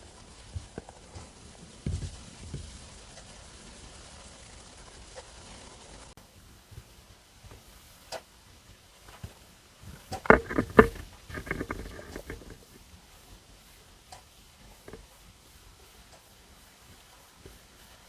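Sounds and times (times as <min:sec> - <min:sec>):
faint stomach clicks: 0:06.6 - 0:18.0
stomach gurgles: 0:08.7 - 0:16.2.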